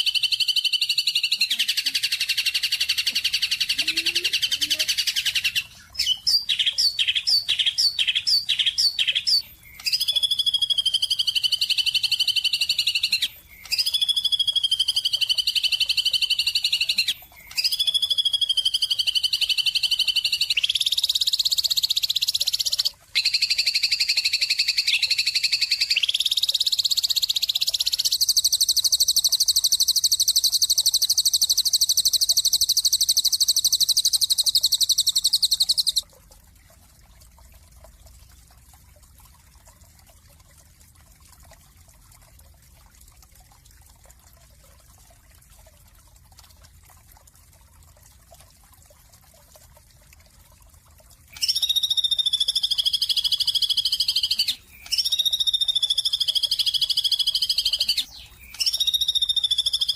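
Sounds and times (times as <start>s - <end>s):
songbird pulsed trills: 0.0s - 36.0s, 51.2s - 59.9s
songbird chirping: 51.4s - 59.9s.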